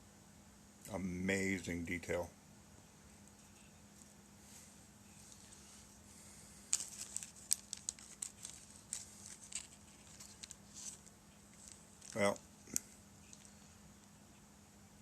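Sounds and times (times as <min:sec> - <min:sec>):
plastic bag crinkling: 0:06.7 - 0:13.6.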